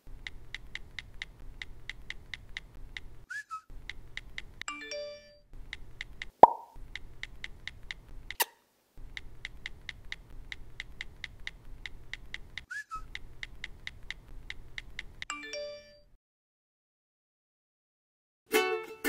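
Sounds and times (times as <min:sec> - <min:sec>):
rapid even ticking: 0:00.0 - 0:04.7, 0:05.5 - 0:08.4, 0:09.0 - 0:15.3.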